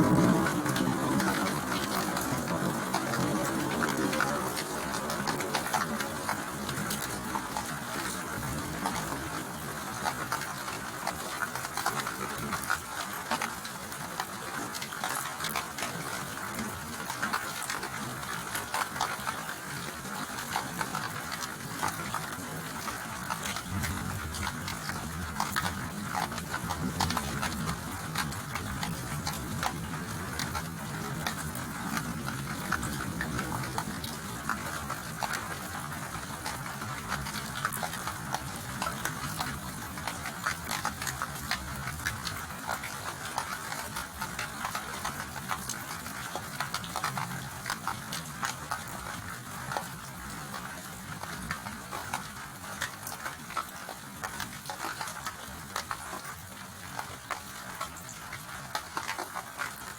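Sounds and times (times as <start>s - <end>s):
distant thunder rumble: 0.0s - 7.3s
steady rain falling: 0.0s - 59.9s.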